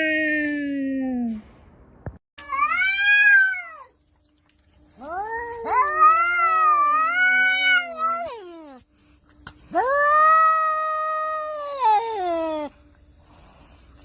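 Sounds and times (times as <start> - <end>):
cats yowling: 2.4 - 3.9, 5.0 - 8.8, 9.7 - 12.7.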